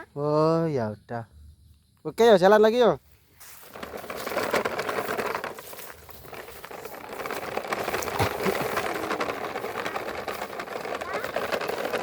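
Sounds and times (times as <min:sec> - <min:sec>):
toy truck rattling on ground: 0:03.4 - 0:12.0.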